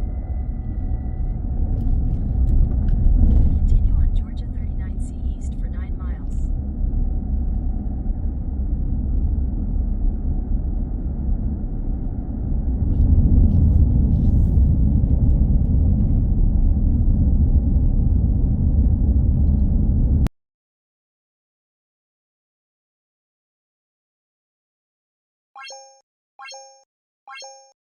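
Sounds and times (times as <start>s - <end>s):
road and engine rumble in car: 0.0s - 20.3s.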